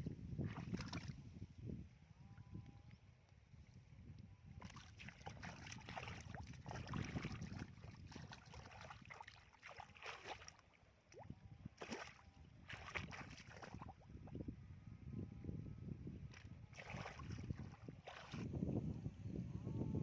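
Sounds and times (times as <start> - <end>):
muddy water sloshing and splashing: 0.3 - 1.4, 4.6 - 14.4, 16.3 - 18.6.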